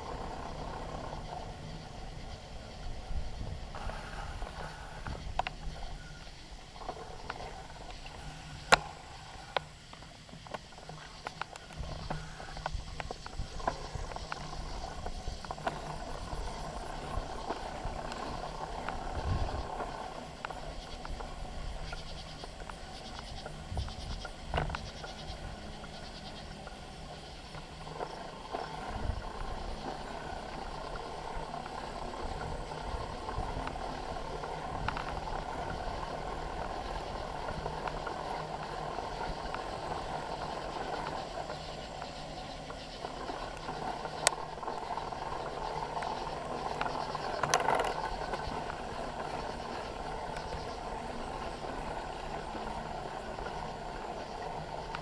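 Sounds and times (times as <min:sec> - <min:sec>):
bicycle tyre and drivetrain noise: 0:00.0 - 0:55.0
bicycle clattering: 0:03.6 - 0:55.0.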